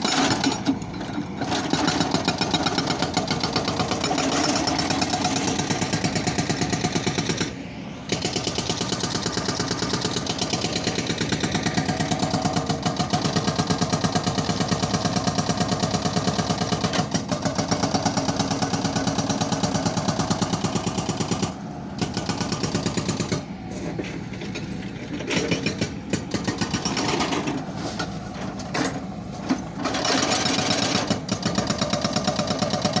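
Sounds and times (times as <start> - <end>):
breaker hammering concrete: 25.1 - 28.1.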